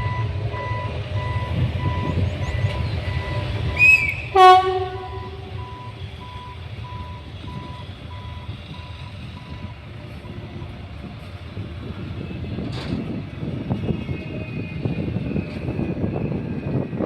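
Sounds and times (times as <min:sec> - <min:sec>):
electric train rumble: 0:00.0 - 0:17.0.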